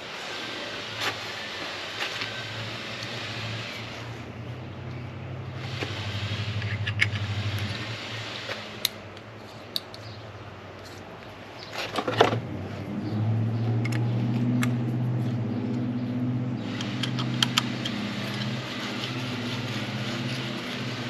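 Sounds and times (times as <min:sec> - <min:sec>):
motor humming: 0:00.2 - 0:09.0, 0:15.7 - 0:21.0.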